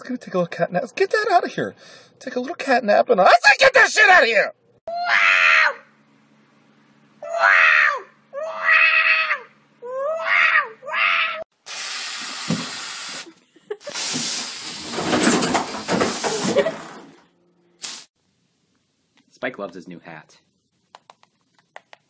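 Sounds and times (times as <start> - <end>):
steady hissing noise: 11.6 - 16.5, 17.8 - 20.8.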